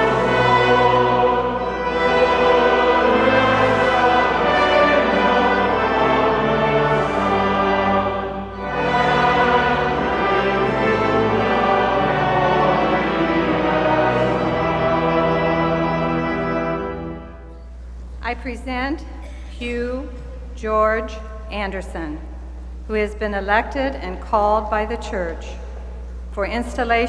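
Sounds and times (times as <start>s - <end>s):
brass instruments playing chords: 0.0s - 18.0s.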